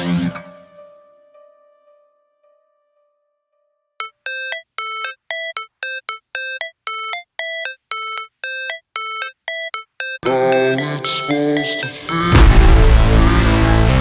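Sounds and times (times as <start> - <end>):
synthesizer beeping notes: 4.0 - 14.0.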